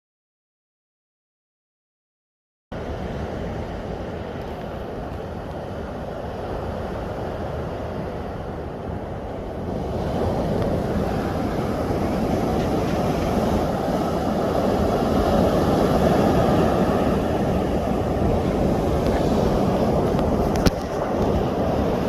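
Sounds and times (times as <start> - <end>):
sea waves washing: 2.8 - 22.0
wind on microphone: 2.8 - 22.0.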